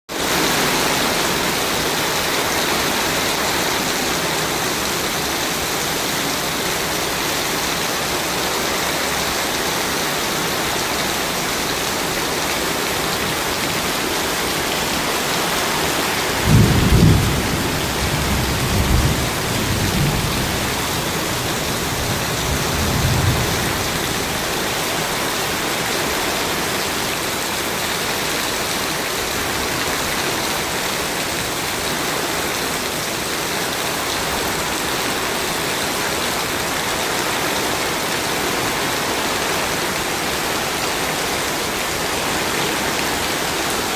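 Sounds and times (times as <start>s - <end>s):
steady rain falling: 0.1s - 43.9s
thunder rumbling: 16.1s - 24.3s.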